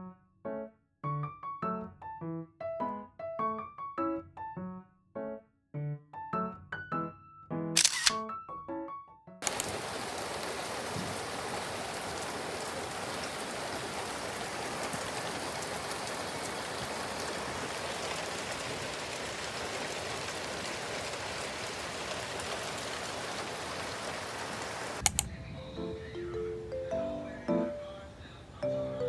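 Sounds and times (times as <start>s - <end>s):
sharp clicks: 7.8s - 8.2s, 9.4s - 9.8s, 25.0s - 25.3s
steady rain: 9.4s - 26.1s.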